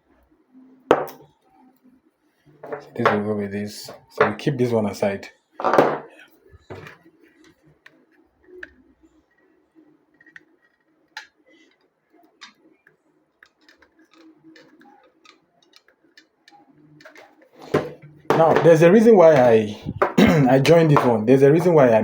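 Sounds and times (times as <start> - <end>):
battery cells clicking and tapping: 10.1 - 17.4.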